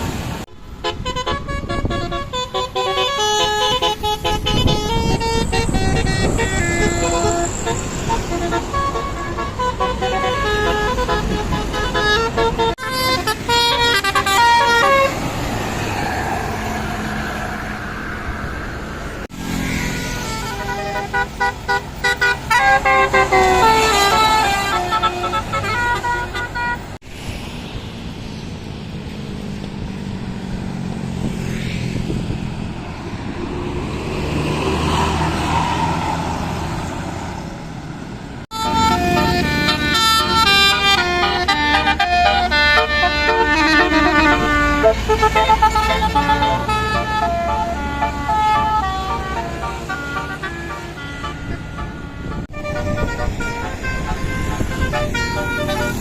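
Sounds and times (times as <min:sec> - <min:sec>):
melodic bus air horns: 0:00.0 - 0:15.9, 0:19.5 - 0:27.0, 0:38.5 - 0:56.0
bus engines humming: 0:00.0 - 0:56.0
passing traffic: 0:00.0 - 0:56.0.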